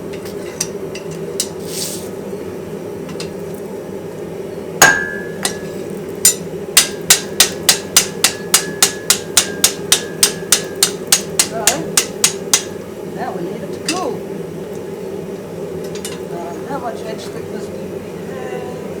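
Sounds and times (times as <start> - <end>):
steady low hum: 0.0 - 19.0
anvil ringing: 4.8 - 5.7, 6.3 - 12.8
hammer striking anvil: 4.8 - 5.7, 6.3 - 12.8.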